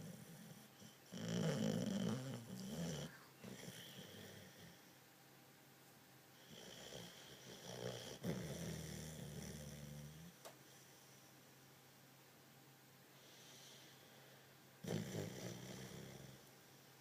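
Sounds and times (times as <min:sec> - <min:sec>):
dog snoring: 0:00.0 - 0:05.0, 0:06.4 - 0:11.2, 0:13.2 - 0:16.6.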